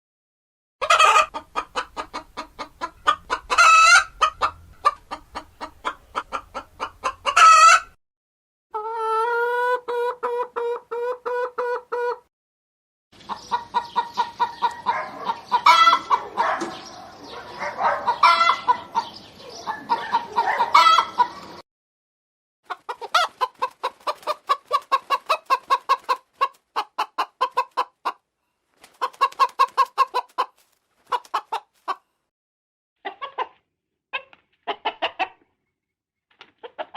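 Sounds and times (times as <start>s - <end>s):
hens clucking: 0.8s - 8.0s, 8.8s - 12.2s, 13.2s - 21.6s, 22.7s - 28.2s, 28.8s - 32.0s, 33.0s - 35.5s, 36.6s - 36.9s
hens squawking cackles: 0.8s - 8.0s, 8.7s - 12.2s, 13.2s - 21.6s, 22.7s - 28.2s, 28.8s - 32.0s, 34.2s - 35.4s.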